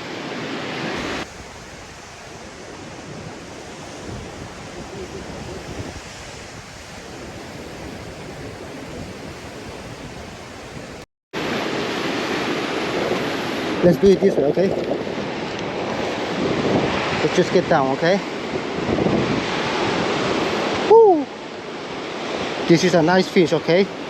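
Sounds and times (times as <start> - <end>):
ocean surf washing: 0.0 - 24.0
wind noise on microphone: 0.8 - 11.6, 12.3 - 22.7.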